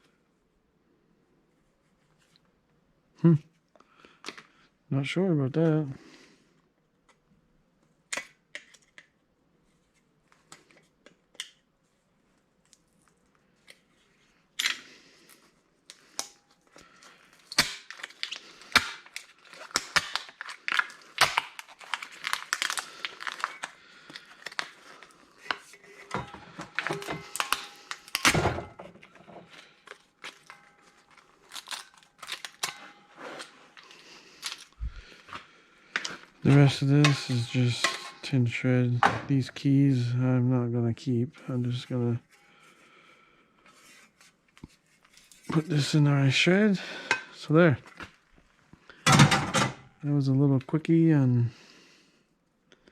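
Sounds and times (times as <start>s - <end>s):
loose parts clattering and scraping: 25.4s - 35.0s, 36.0s - 38.4s.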